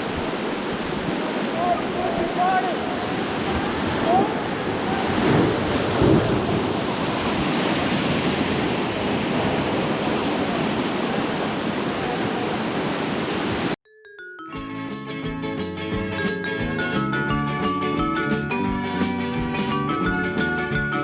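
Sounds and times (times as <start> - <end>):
wind buffeting microphone: 0.0 - 12.6
rushing whitewater: 0.0 - 13.8.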